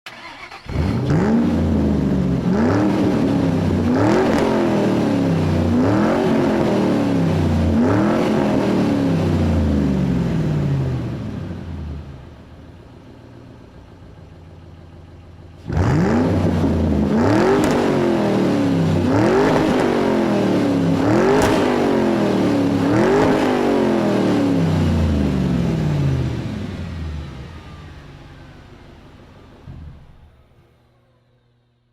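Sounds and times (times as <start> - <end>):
engine revving: 0.1 - 12.3, 15.6 - 29.0.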